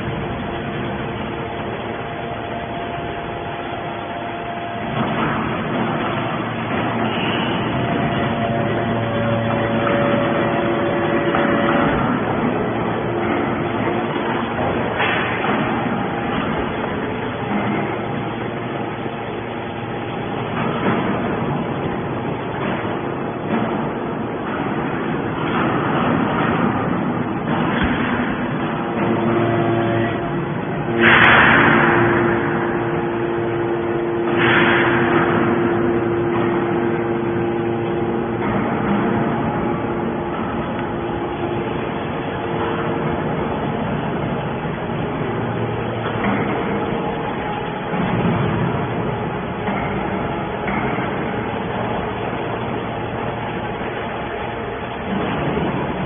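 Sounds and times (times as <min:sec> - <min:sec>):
can baler running: 0:00.0 - 0:56.0
motor and pump hum: 0:00.0 - 0:56.0
hydraulic rushing surge: 0:26.3 - 0:56.0.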